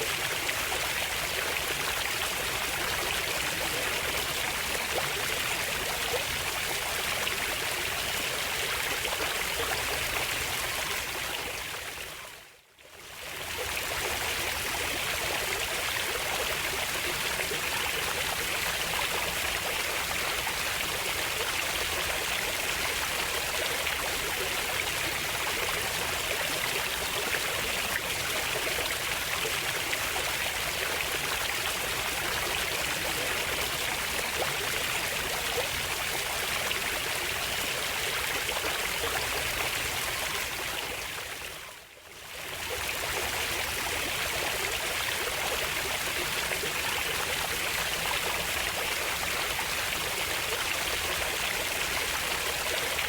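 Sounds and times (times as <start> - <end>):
flowing water: 13.0 - 53.0.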